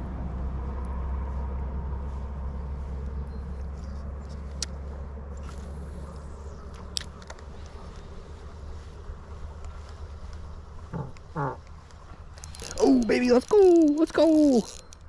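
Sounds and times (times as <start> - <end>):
sharp clicks: 9.6 - 15.0.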